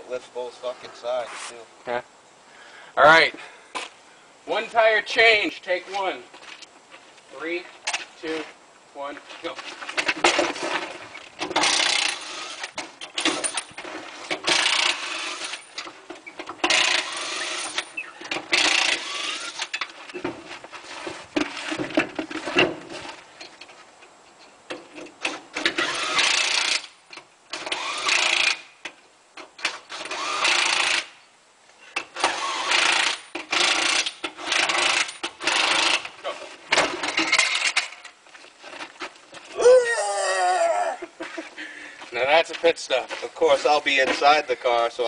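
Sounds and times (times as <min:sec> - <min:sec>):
clatter of tools and wheel parts: 0:09.2 - 0:31.1, 0:31.9 - 0:39.5
impact wrench bursts: 0:11.5 - 0:13.6, 0:14.4 - 0:15.7, 0:16.6 - 0:19.8, 0:25.6 - 0:27.0, 0:27.6 - 0:28.7, 0:29.9 - 0:31.2, 0:32.1 - 0:36.1.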